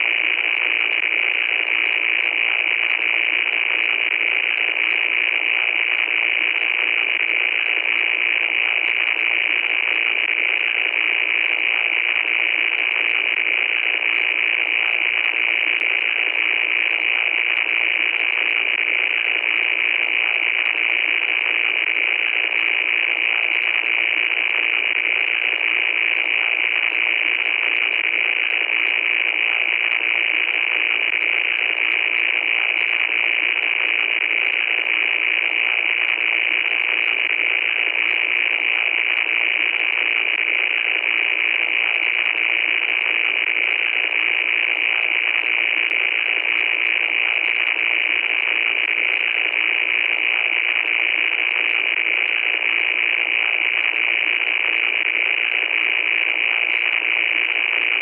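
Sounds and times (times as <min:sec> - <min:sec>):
hissing static noise: 0:00.0 - 0:58.0.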